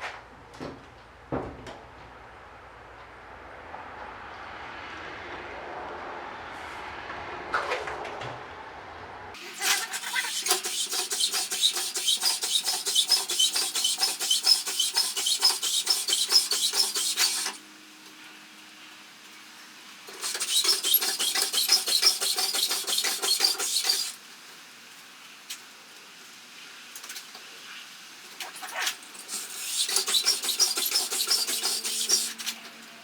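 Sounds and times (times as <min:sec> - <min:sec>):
rapid metallic clicking: 0:10.0 - 0:17.6, 0:29.2 - 0:32.4.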